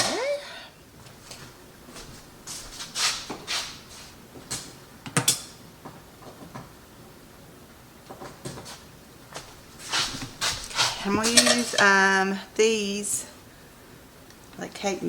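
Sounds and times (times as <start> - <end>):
rustling and brushing: 1.1 - 4.5, 8.4 - 12.0.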